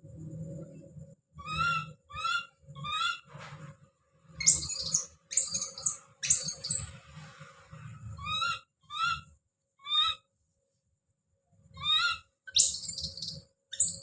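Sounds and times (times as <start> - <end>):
baby monkey screaming: 1.4 - 3.3, 4.4 - 6.9, 8.2 - 10.3, 11.8 - 14.0.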